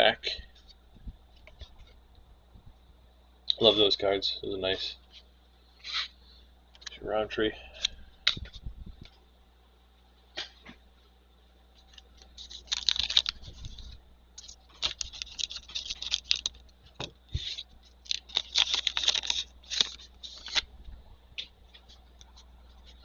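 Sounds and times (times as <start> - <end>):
trading cards scraping: 11.9 - 16.6, 17.3 - 20.7.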